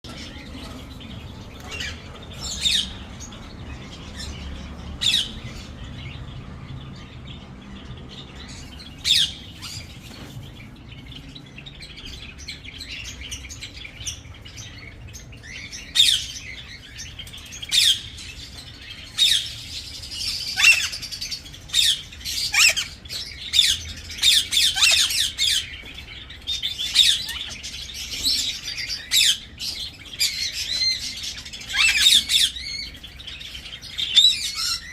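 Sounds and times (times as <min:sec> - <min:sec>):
birds squawking and chirping: 0:00.0 - 0:34.9.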